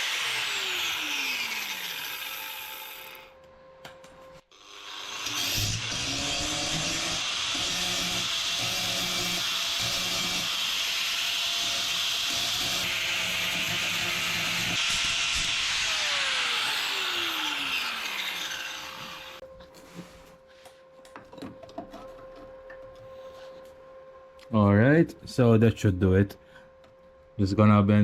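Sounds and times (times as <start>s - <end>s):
angle grinder grinding steel: 0.0s - 3.3s, 4.5s - 19.4s
grinder motor whine spinning down: 12.6s - 19.4s.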